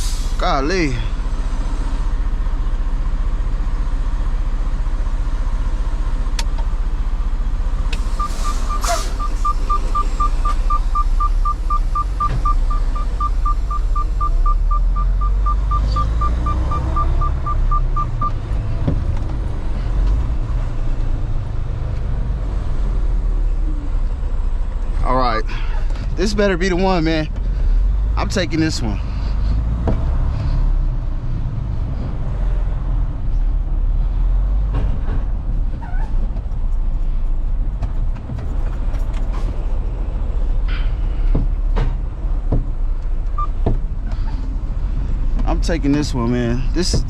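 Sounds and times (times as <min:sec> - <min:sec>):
diesel engine idling: 0:00.0 - 0:47.0
rapid electronic beeps: 0:08.2 - 0:18.4.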